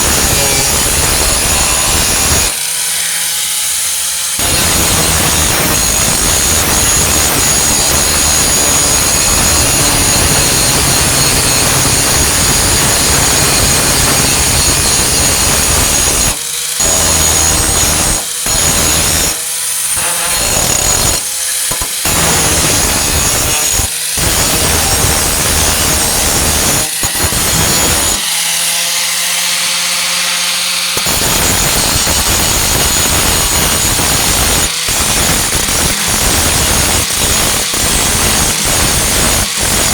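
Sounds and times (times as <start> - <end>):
angle grinder grinding metal: 0.0 - 39.9.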